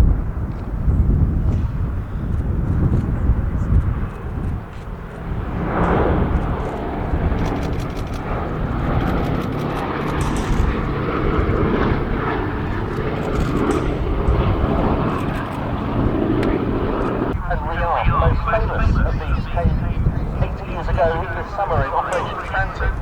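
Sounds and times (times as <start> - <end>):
propeller aircraft engines droning: 0.0 - 23.0.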